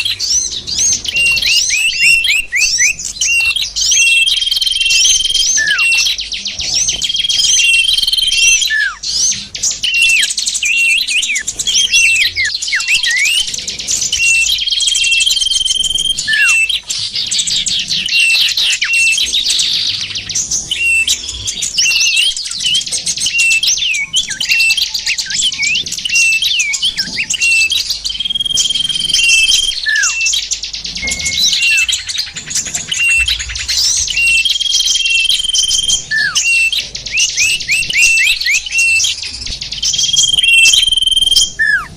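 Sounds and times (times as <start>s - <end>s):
songbirds chirping: 0.0s - 41.9s
high bird lure whistle: 14.2s - 16.9s, 23.3s - 32.1s, 32.9s - 39.2s, 39.9s - 41.9s.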